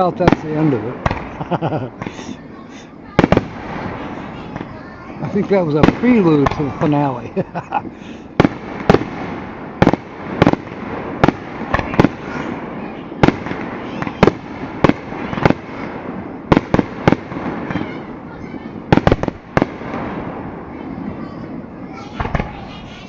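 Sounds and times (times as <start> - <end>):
fireworks crackle and rumble: 0.0 - 23.0
firework shells bursting: 0.2 - 2.4.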